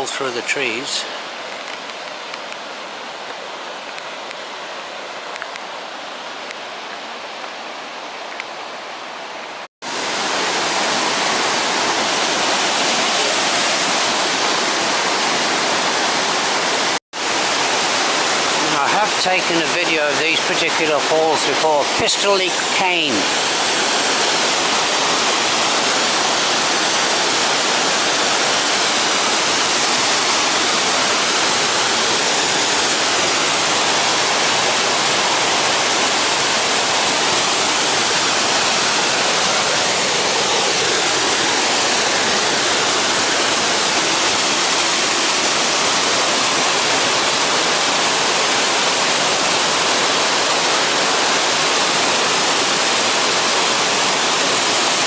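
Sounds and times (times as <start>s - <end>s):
waterfall rushing: 0.0s - 55.0s.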